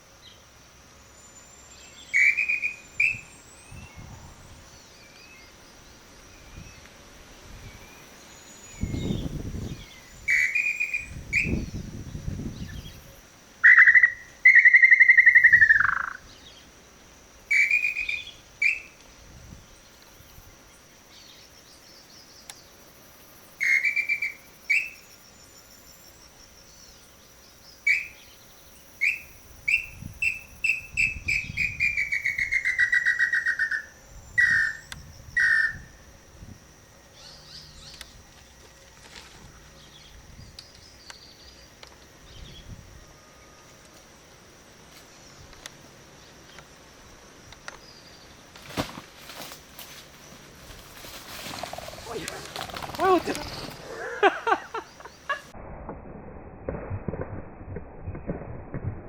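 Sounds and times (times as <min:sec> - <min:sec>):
birds whistling calls: 0:02.0 - 0:04.1, 0:08.6 - 0:11.8, 0:13.6 - 0:16.3, 0:17.5 - 0:18.9, 0:23.6 - 0:25.0, 0:27.9 - 0:28.4, 0:29.0 - 0:35.9
bird call whistle: 0:02.2 - 0:03.2, 0:10.3 - 0:11.6, 0:13.6 - 0:16.2, 0:17.5 - 0:18.9, 0:23.6 - 0:25.0, 0:27.9 - 0:28.2, 0:29.0 - 0:35.9.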